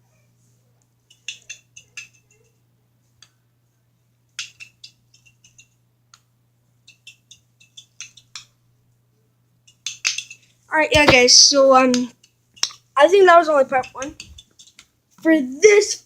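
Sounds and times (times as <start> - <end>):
fidget stick clattering: 1.1 - 2.5, 4.4 - 6.2, 6.8 - 8.6, 9.6 - 14.9.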